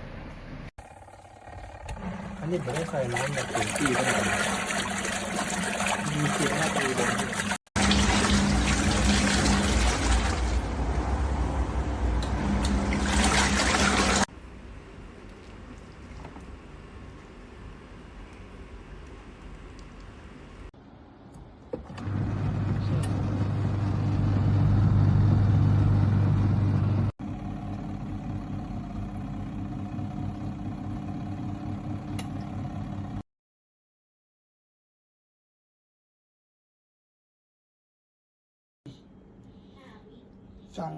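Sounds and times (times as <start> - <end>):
motor hum: 0.0 - 14.3, 21.7 - 33.2
water churning in washing machine: 0.8 - 11.5, 12.2 - 14.3.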